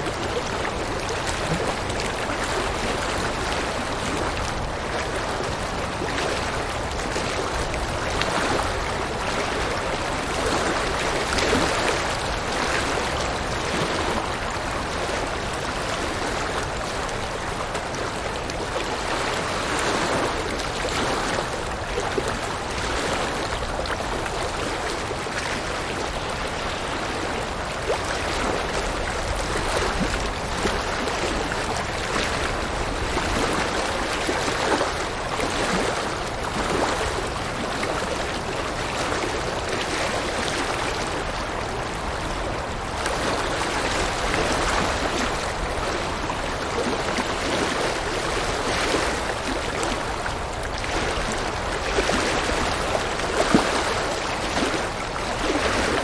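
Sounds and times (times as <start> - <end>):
river water rushing over rocks: 0.0 - 56.0.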